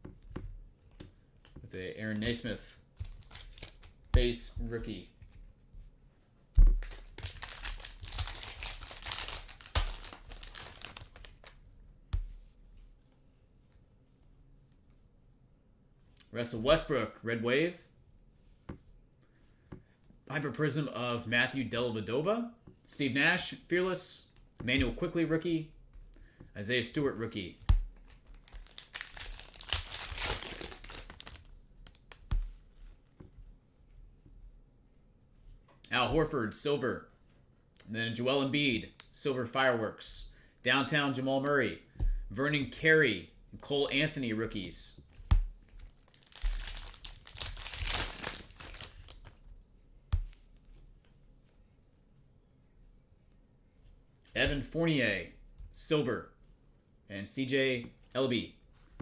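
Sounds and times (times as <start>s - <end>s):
plastic wrapper tearing and crinkling: 3.0s - 3.9s, 6.7s - 11.6s, 28.0s - 32.3s, 46.0s - 49.4s
soft thud: 6.6s - 6.9s.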